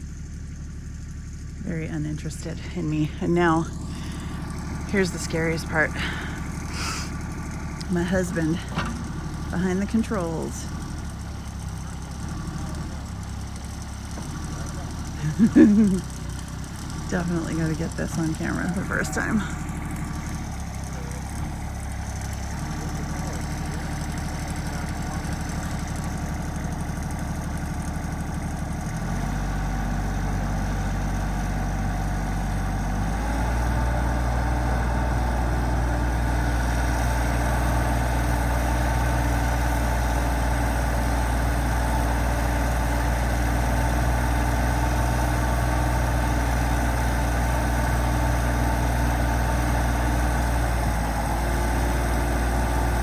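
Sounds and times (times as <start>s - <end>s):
excavator engine running: 0.0s - 53.0s.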